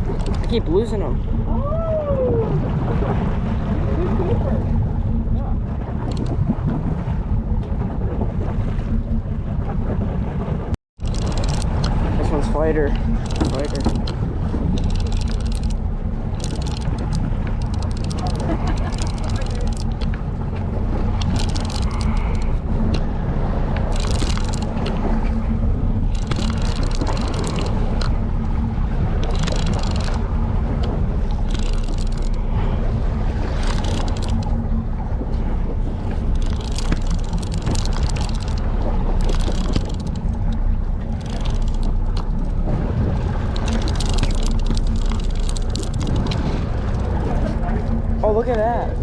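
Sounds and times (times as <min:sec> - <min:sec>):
boat engine humming: 0:00.0 - 0:49.0
water sloshing against hull: 0:00.0 - 0:49.0.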